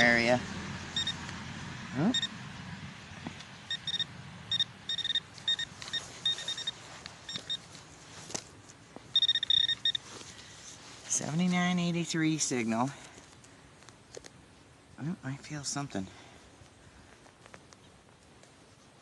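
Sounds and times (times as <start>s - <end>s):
metal detector beeping: 1.0s - 1.2s, 2.0s - 2.4s, 3.6s - 7.8s, 9.1s - 10.3s.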